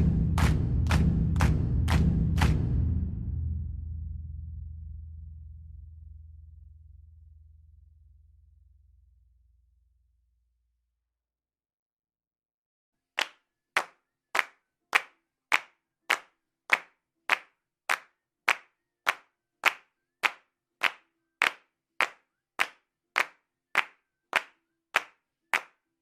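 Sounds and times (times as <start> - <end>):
hand claps: 0.0 - 2.9, 13.2 - 25.9.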